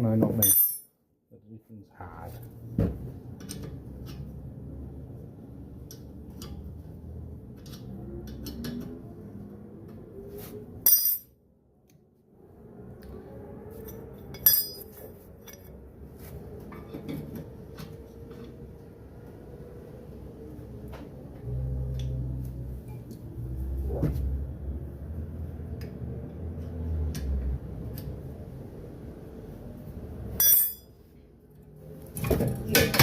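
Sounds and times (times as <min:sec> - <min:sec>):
metal tools clinking on brake parts: 0:00.4 - 0:00.9, 0:10.9 - 0:11.3, 0:13.9 - 0:15.7, 0:30.4 - 0:31.0.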